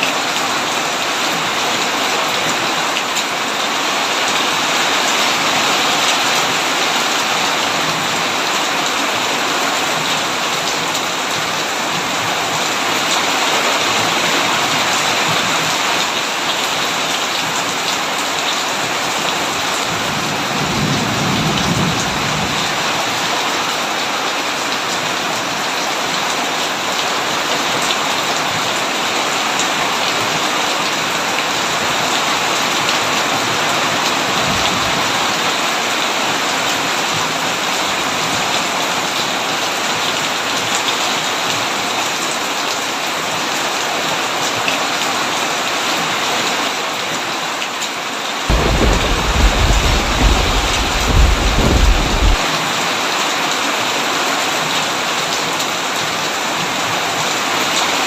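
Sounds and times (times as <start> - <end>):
heavy rain on a tin roof: 0.0 - 58.0
distant thunder rumble: 48.5 - 52.4.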